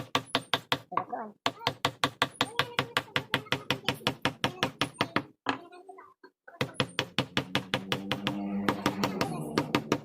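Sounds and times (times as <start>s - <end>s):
mallet tapping on chisel: 6.6s - 10.0s.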